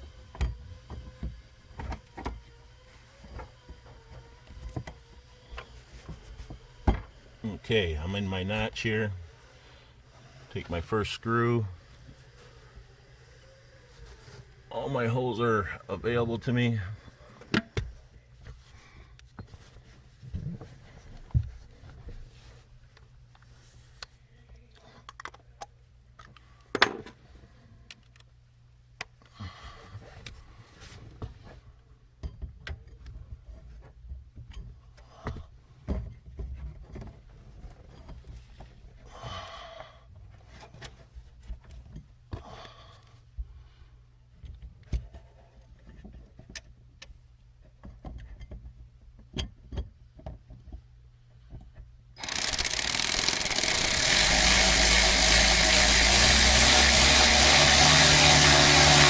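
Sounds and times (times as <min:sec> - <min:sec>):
power drill-driver driving screws: 0:52.2 - 0:59.0.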